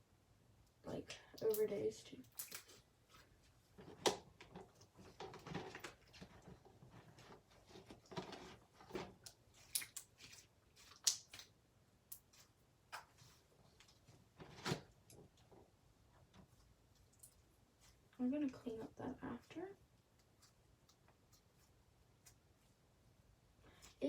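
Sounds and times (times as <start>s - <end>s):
slime squelching and clicking: 1.4s - 2.8s, 9.2s - 13.2s.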